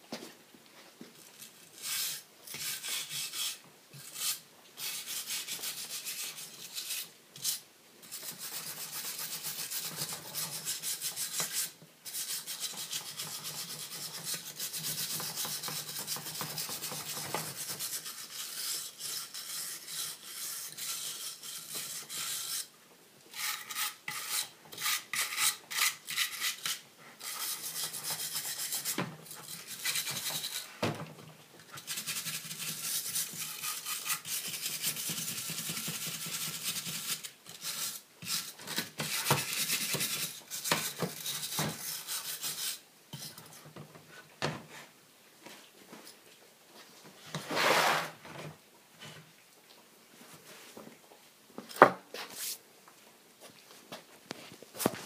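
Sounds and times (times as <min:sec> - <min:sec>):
wire brush scraping wood: 0:47.3 - 0:48.2.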